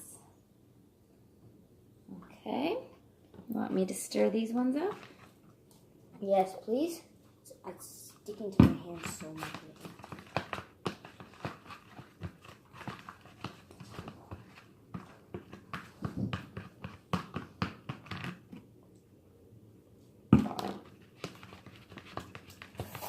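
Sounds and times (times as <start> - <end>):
slime squelching in bowls: 4.6 - 6.5, 7.1 - 19.0, 20.4 - 23.0.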